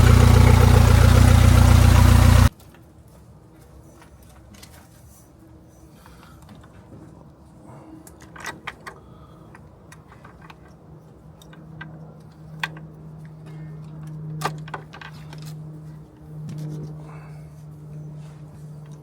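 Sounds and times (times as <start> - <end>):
steady low hum: 0.0 - 2.5.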